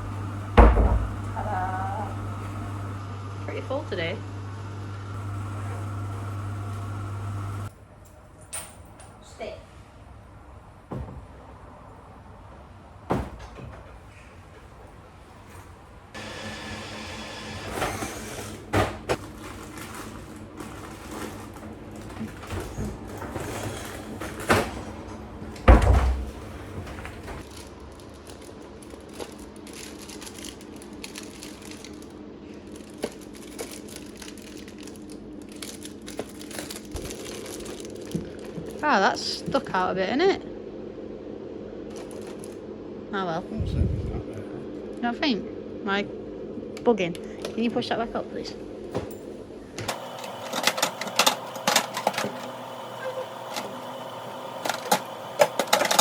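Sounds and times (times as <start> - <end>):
snack packets crinkling: 19.2 - 22.4, 27.4 - 38.8
steady low hum: 28.7 - 56.0.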